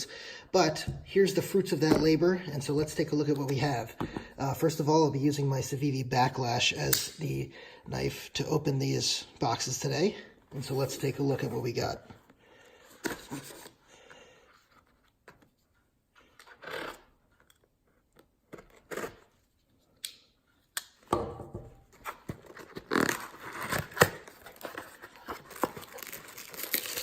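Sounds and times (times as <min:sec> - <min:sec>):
cardboard rustling and tearing: 0:22.0 - 0:27.0.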